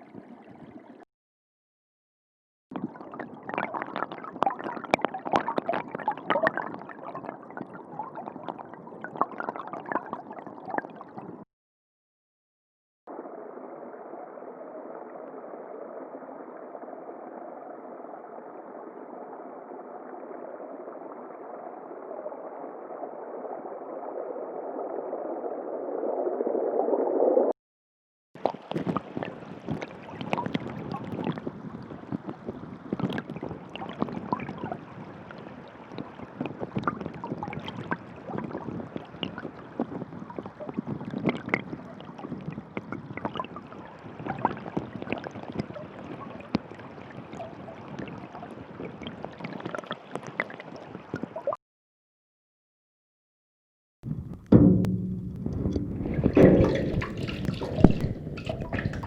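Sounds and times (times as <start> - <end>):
crackling bubbling underwater noise: 0.0 - 1.0, 2.7 - 11.5, 28.4 - 51.6, 54.1 - 59.0
muffled underwater water rush: 0.0 - 1.0, 2.7 - 11.4, 13.1 - 27.5, 28.4 - 51.6, 54.1 - 59.0.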